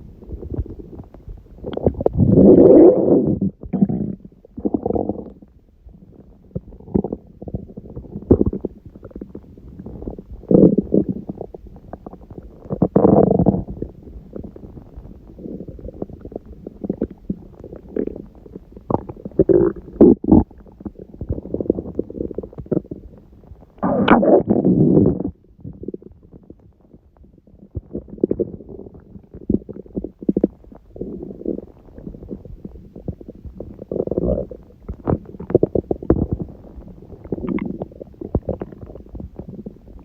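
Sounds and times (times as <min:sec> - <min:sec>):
stomach growling: 0:00.0 - 0:40.0.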